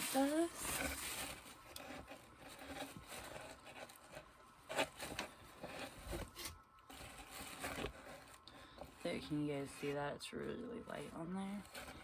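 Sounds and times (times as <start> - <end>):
fabric rustling: 0.0 - 8.4.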